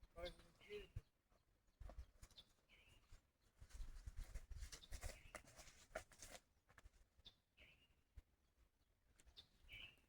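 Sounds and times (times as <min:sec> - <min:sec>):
small bird chirp: 0:09.2 - 0:10.0.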